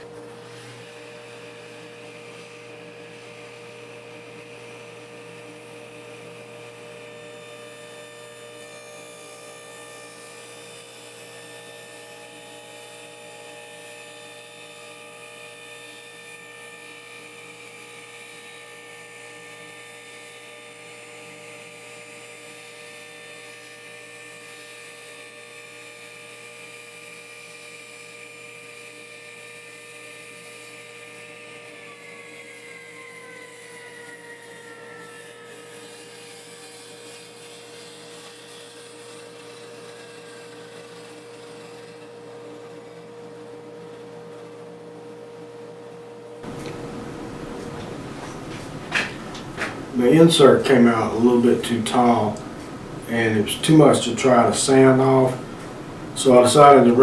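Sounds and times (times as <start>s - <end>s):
table saw motor whine: 0.0s - 25.8s, 28.9s - 42.2s, 46.4s - 57.0s
dust collector motor whine: 46.4s - 57.0s.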